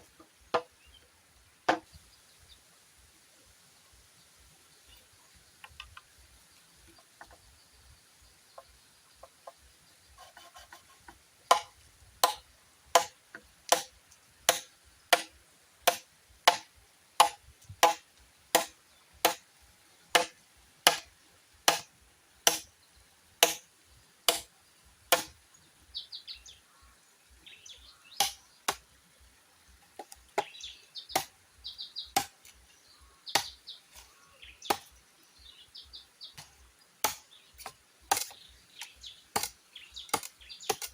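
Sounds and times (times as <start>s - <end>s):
birds chirping: 0.0s - 2.7s, 3.7s - 12.5s, 23.8s - 40.9s
blade chopping bamboo: 11.5s - 13.9s, 14.5s - 19.4s, 20.1s - 22.7s, 23.4s - 23.6s, 24.3s - 24.5s, 25.1s - 25.4s, 28.2s - 28.8s, 31.1s - 31.3s, 32.1s - 32.6s, 33.3s - 33.6s, 34.7s - 34.9s, 37.0s - 38.4s, 39.3s - 40.9s.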